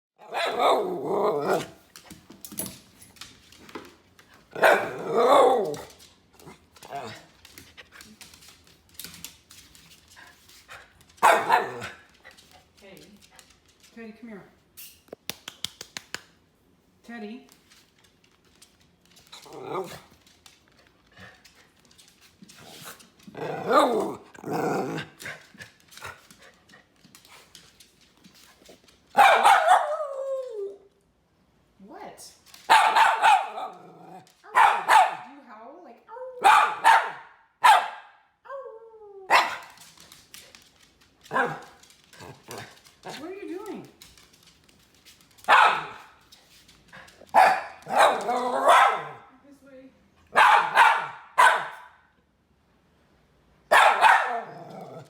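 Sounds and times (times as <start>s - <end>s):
dog bark-howl: 0.2s - 1.7s, 29.2s - 30.6s, 53.7s - 54.6s
dog barking and whining: 0.2s - 1.9s, 4.5s - 6.0s, 11.2s - 12.0s, 29.1s - 30.9s, 32.7s - 35.3s, 36.1s - 39.8s, 47.3s - 49.3s, 50.3s - 52.0s, 53.7s - 55.0s.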